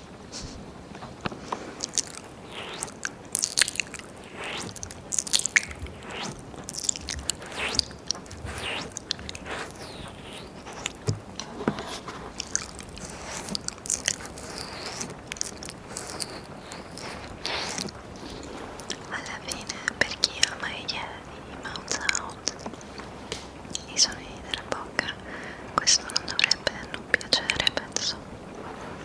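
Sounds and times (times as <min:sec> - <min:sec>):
wet mouth licking sounds: 0:01.6 - 0:20.6, 0:21.7 - 0:23.1, 0:26.0 - 0:28.0.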